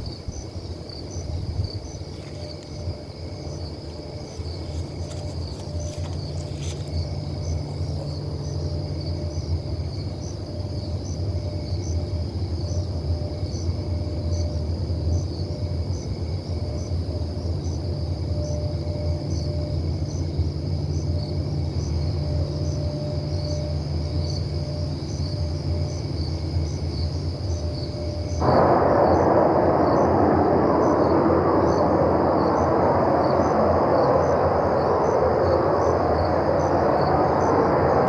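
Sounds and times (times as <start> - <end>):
crickets chirping: 0.0 - 38.0
low rumble: 28.4 - 38.0
rushing roar: 28.4 - 38.0.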